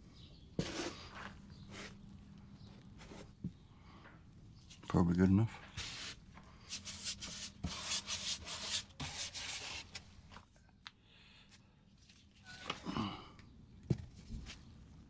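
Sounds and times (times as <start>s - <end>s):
rough scraping strokes on a surface: 0.6s - 2.0s, 5.7s - 10.0s.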